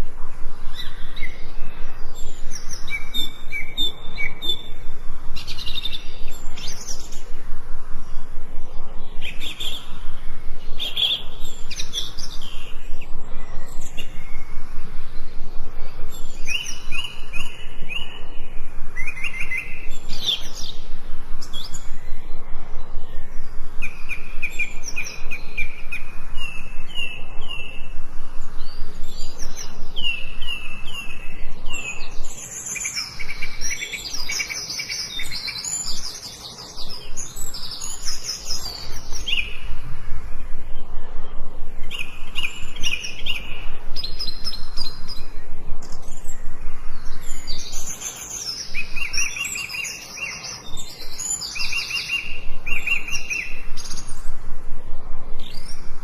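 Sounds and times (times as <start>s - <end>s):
birds chirping and trilling: 0.0s - 56.0s.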